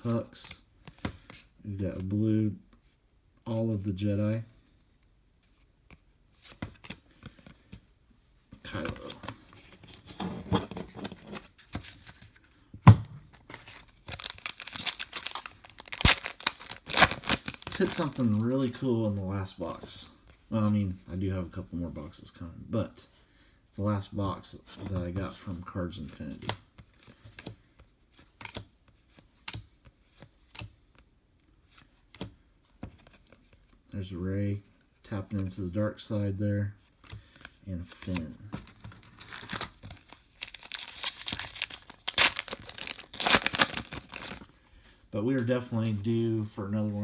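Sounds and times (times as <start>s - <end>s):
cards rustling: 8.6s - 12.6s, 13.4s - 20.4s, 37.0s - 46.5s
foil wrapper tearing and crinkling: 13.6s - 18.6s, 38.8s - 44.4s
trading cards clicking and snapping: 14.1s - 18.4s, 40.4s - 44.4s.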